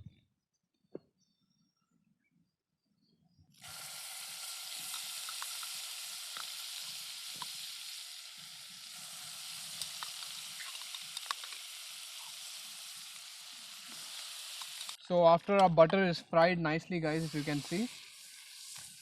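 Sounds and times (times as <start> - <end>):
butter sizzling in a pan: 3.6 - 15.1, 17.0 - 19.0.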